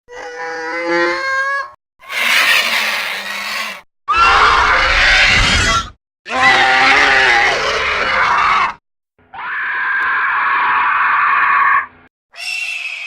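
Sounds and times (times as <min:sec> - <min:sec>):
creature calls: 0:02.0 - 0:05.3.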